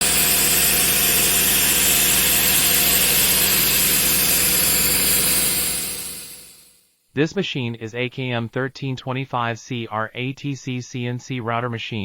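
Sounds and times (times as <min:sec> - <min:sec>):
router spindle cutting metal: 0:00.0 - 0:06.7.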